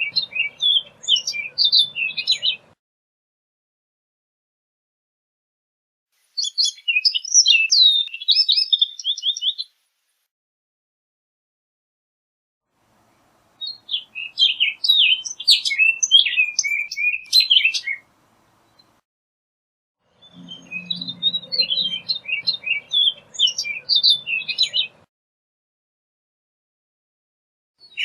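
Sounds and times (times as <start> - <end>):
bird singing: 0.0 - 2.8, 6.4 - 9.7, 13.0 - 19.0, 20.1 - 25.1, 27.8 - 28.0.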